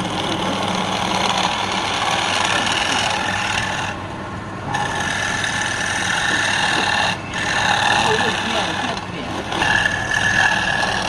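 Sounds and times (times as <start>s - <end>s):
lathe tool scraping wood: 0.0s - 4.0s, 4.7s - 11.0s
lathe motor hum: 0.0s - 11.0s.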